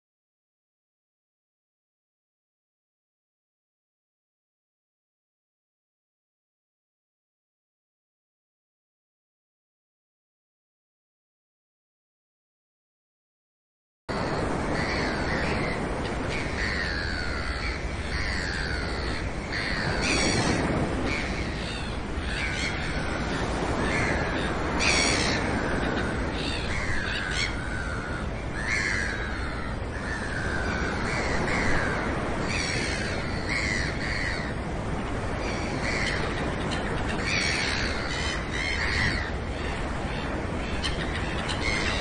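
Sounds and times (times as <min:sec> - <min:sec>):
birds calling: 0:14.1 - 0:42.0.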